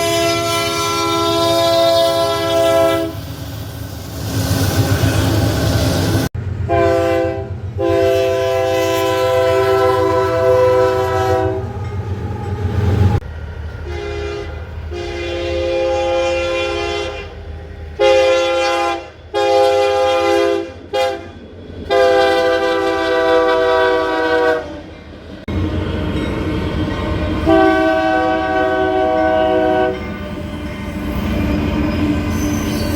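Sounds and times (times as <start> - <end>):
train horn blasts: 0.0 - 3.2, 6.7 - 12.0, 13.8 - 17.4, 18.0 - 24.9, 27.3 - 30.2
low train rumble: 0.0 - 32.9.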